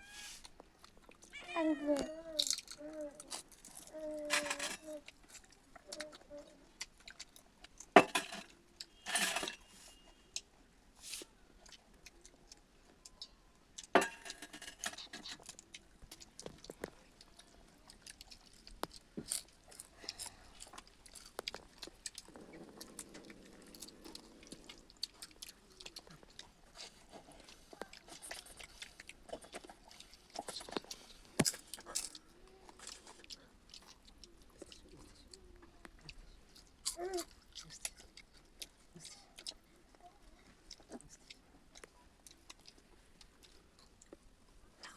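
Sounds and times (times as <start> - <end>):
person chewing and crunching food: 0.0 - 44.9.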